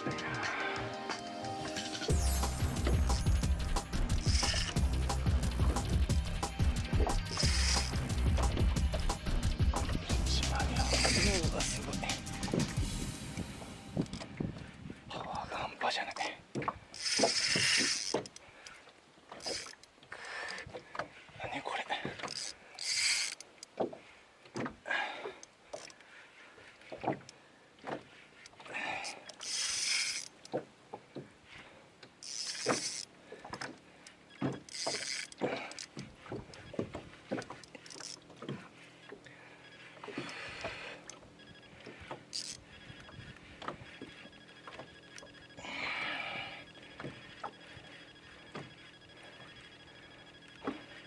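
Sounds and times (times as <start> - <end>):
fishing tackle clicking and knocking: 2.8 - 12.8, 16.2 - 21.1, 22.0 - 24.0, 32.0 - 39.2, 40.1 - 44.1
water slapping against hull: 4.0 - 13.0, 14.0 - 45.6.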